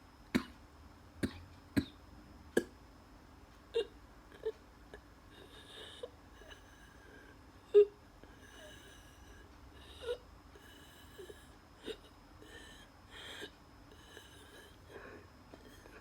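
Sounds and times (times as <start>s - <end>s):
asthmatic wheezing breaths: 3.8s - 16.0s.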